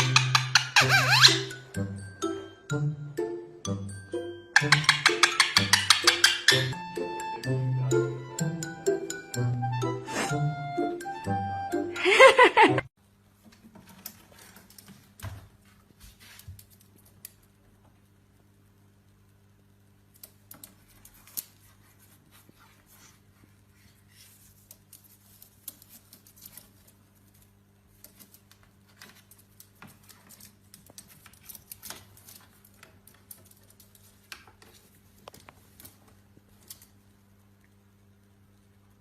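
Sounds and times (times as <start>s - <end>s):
low electrical hum: 10.5s - 39.0s.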